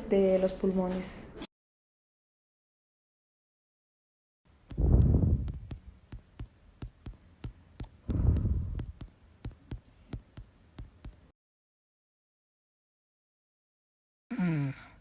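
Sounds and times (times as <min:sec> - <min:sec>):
sharp evenly spaced clicks: 0:04.7 - 0:11.3.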